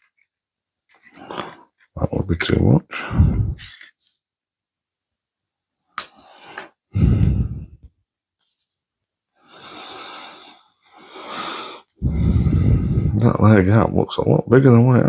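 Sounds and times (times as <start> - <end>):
person exhaling heavily: 3.0 - 3.7, 6.3 - 7.9, 9.5 - 13.2.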